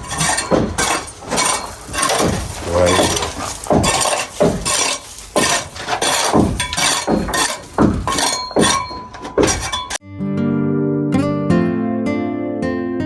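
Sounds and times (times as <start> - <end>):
hammer strikes with metallic clink: 0.0 - 10.0
acoustic guitar music: 9.8 - 13.0.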